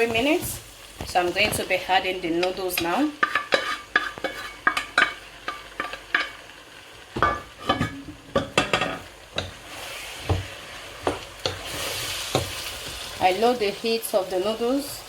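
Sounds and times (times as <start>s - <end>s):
hot oil sizzling: 0.0s - 15.0s
spoon knocking against pot: 2.4s - 6.4s, 7.2s - 9.6s, 10.3s - 11.6s.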